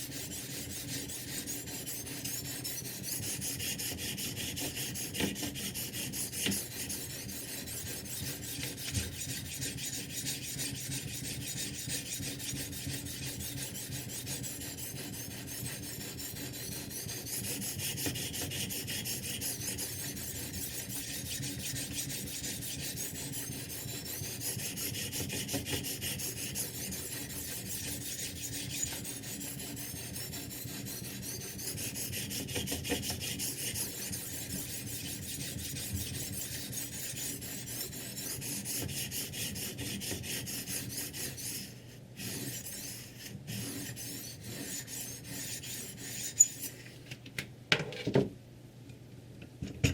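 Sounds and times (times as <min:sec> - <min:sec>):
sharpening stone rasping on knife: 0:00.0 - 0:46.8.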